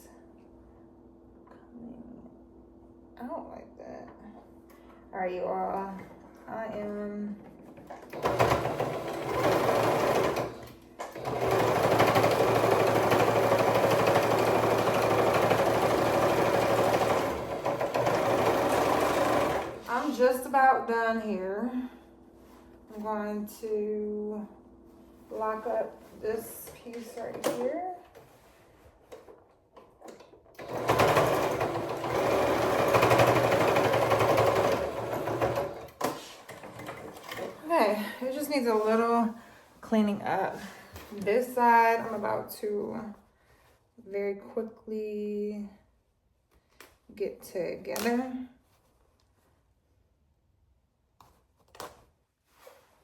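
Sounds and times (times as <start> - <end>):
electric sewing machine stitching: 7.9 - 20.5, 30.5 - 37.8.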